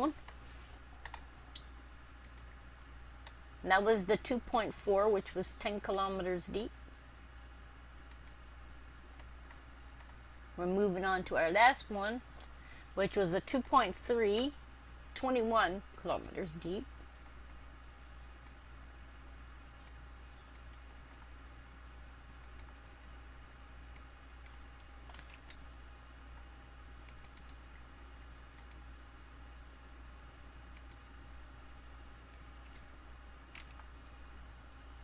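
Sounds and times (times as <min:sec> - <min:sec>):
faint low hum: 0:00.0 - 0:35.0
keyboard and mouse clicks: 0:01.0 - 0:02.5, 0:08.1 - 0:08.4, 0:22.4 - 0:22.8, 0:23.9 - 0:25.8, 0:27.0 - 0:27.6, 0:28.6 - 0:28.8, 0:30.7 - 0:31.1, 0:33.5 - 0:34.2.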